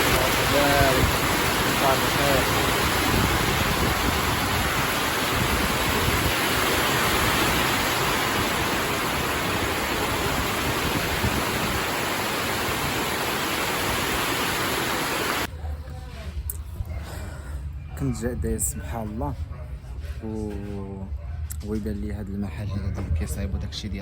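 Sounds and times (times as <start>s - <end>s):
loud rushing noise: 0.0s - 15.5s.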